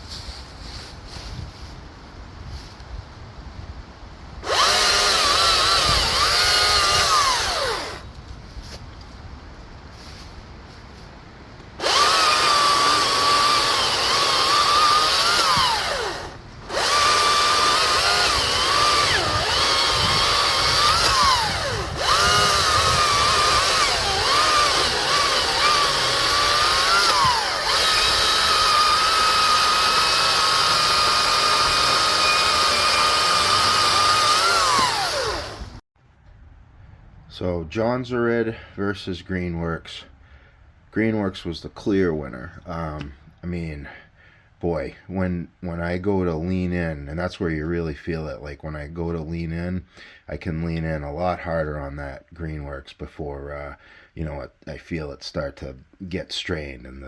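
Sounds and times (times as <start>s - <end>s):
electric chainsaw whine: 4.4s - 8.2s, 11.8s - 35.8s.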